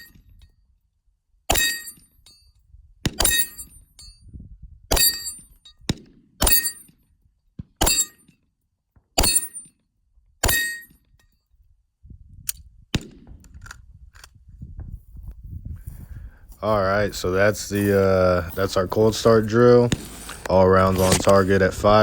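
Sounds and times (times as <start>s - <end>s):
pistol shots with ring: 3.1s - 3.7s, 4.9s - 6.9s, 7.8s - 8.2s, 9.2s - 9.7s, 10.4s - 10.9s
low rustling: 16.5s - 22.0s.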